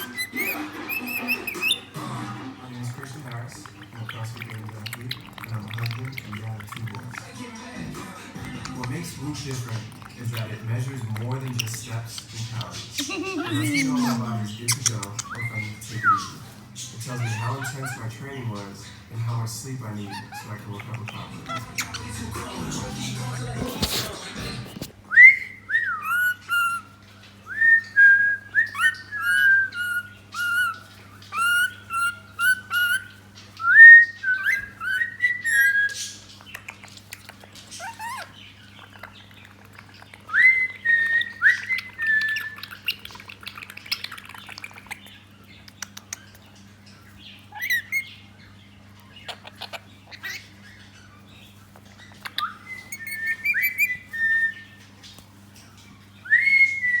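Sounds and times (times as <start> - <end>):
parrot shrill chirps: 0.0 - 2.0, 13.0 - 18.2, 25.6 - 27.0, 28.6 - 36.0, 37.8 - 39.1, 47.5 - 48.2, 52.1 - 54.8.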